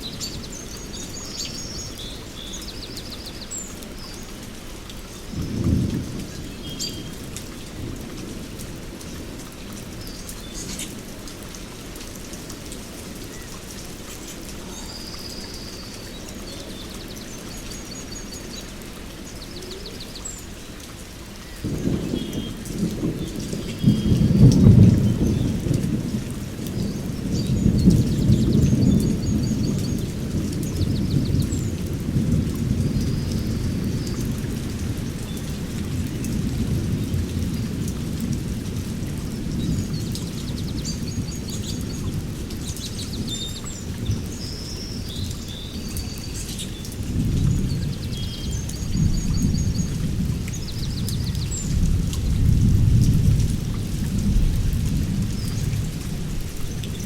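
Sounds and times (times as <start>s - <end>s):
heavy rain: 0.0s - 57.0s
thunder rumbling: 21.6s - 43.4s, 46.9s - 57.0s.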